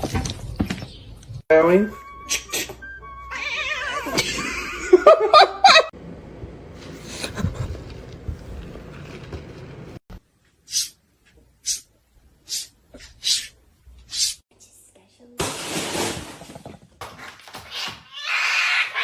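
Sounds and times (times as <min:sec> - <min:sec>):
person laughing: 0:04.0 - 0:05.9
background noise: 0:04.3 - 0:19.0.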